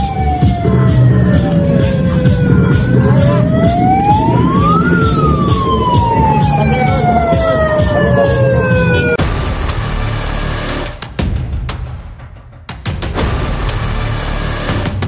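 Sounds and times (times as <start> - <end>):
siren wailing: 0.0 - 11.0
low rumble: 0.6 - 12.2.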